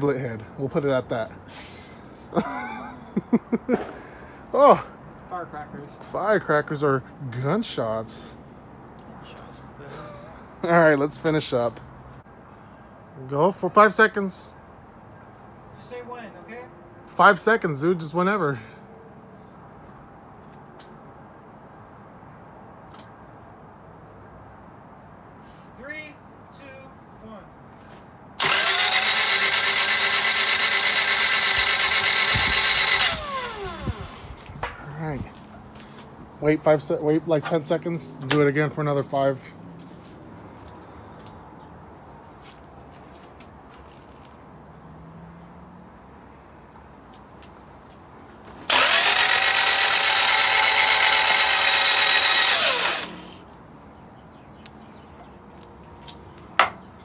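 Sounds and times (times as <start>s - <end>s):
starter motor cranking engine: 28.4s - 34.4s, 48.7s - 53.4s.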